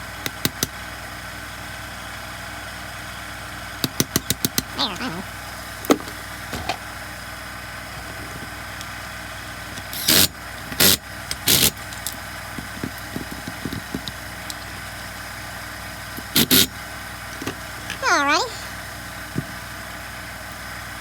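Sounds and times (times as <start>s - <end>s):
tools clattering on workbench: 5.9s - 6.8s.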